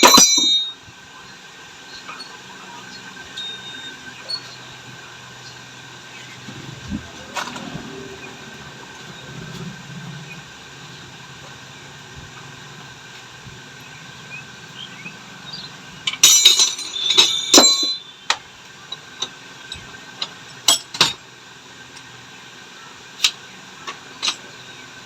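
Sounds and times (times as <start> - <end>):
metal tools clinking and rattling: 0.0 - 0.8, 16.0 - 21.2, 24.2 - 24.5.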